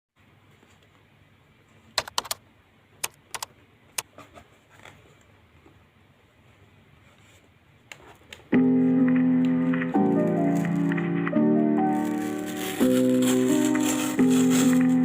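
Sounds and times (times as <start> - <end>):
background music: 8.5 - 15.0.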